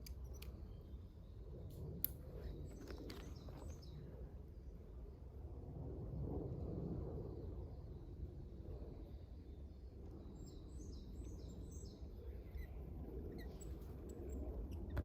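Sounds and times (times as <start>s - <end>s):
small bird chirping: 10.4s - 15.0s.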